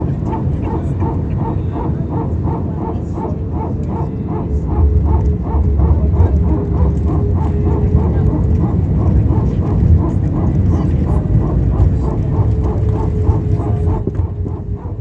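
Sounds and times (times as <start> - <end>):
low aircraft rumble: 0.0 - 15.0.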